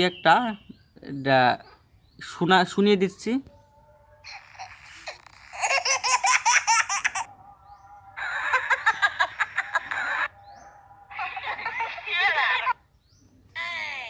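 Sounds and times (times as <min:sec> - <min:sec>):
high-pitched rapid laugh: 0:08.2 - 0:10.3.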